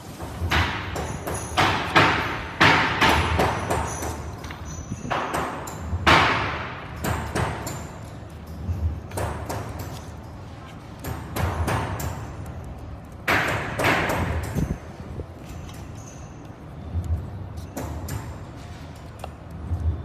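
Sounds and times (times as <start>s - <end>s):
clicks and knocks of tools: 7.0s - 13.3s, 14.2s - 19.6s.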